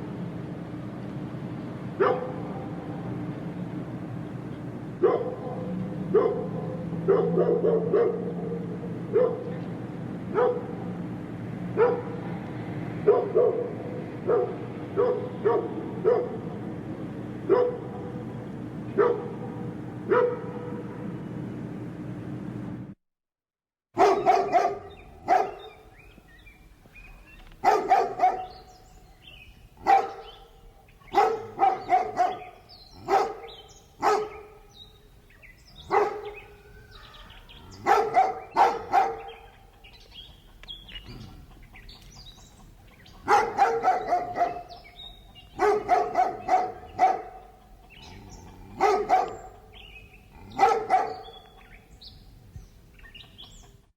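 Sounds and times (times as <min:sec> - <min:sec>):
large dog barking: 0:02.0 - 0:03.0, 0:04.9 - 0:11.0, 0:11.7 - 0:16.7, 0:17.4 - 0:21.1, 0:24.0 - 0:25.9, 0:27.6 - 0:28.8, 0:29.8 - 0:34.8, 0:35.6 - 0:40.4, 0:43.1 - 0:51.7
birds chirping faintly: 0:24.0 - 0:53.9.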